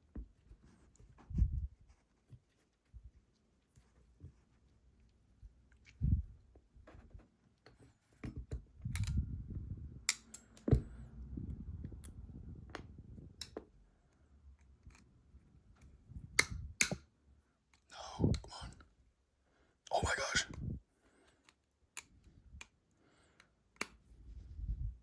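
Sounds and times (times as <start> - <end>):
low rumble of lock handling: 8.5 - 13.6.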